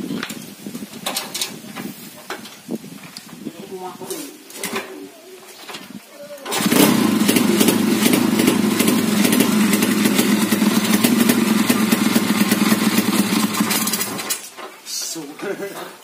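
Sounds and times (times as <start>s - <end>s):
motorcycle engine running: 6.5s - 14.3s.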